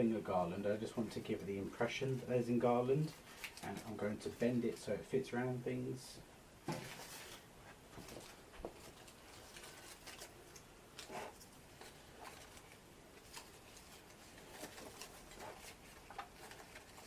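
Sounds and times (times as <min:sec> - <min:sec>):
rustling and light clicks: 0:03.0 - 0:04.0, 0:06.7 - 0:17.0.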